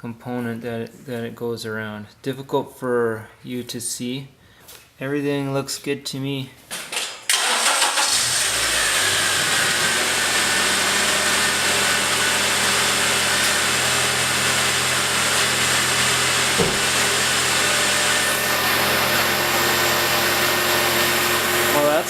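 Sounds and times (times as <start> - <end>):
car engine starting and idling: 7.3 - 22.0.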